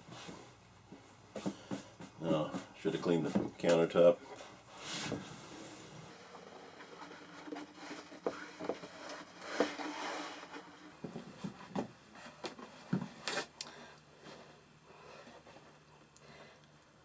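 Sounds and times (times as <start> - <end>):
felt rubbing on wooden shelf: 4.7 - 11.7.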